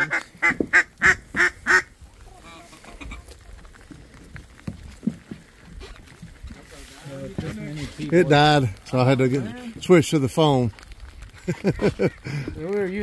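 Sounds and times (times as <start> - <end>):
duck quacking: 0.0 - 1.9.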